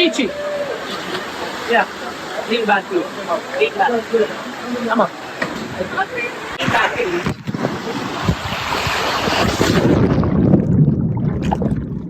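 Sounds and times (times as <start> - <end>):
rushing water: 0.0 - 12.0
wind buffeting microphone: 6.6 - 12.0.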